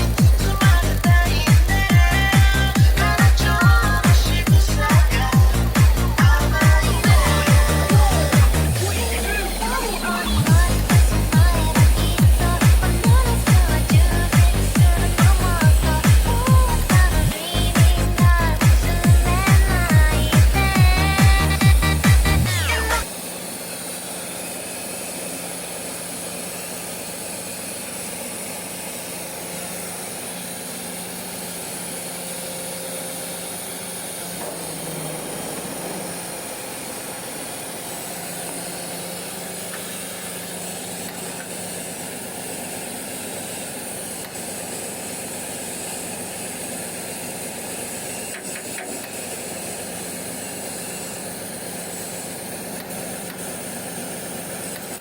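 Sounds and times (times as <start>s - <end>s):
machine hum: 0.0s - 55.0s
arc welding hiss: 22.7s - 55.0s.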